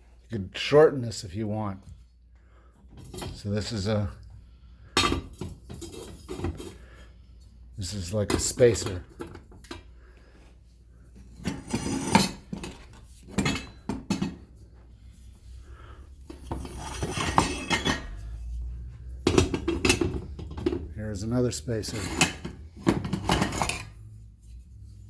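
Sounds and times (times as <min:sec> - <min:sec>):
metal parts knocking and clattering: 0:16.3 - 0:18.3, 0:19.2 - 0:20.9, 0:21.8 - 0:24.0.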